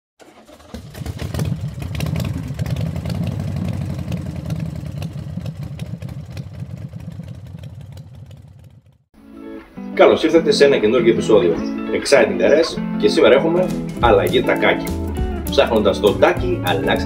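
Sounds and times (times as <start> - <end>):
scooter engine running: 0.2 - 9.1.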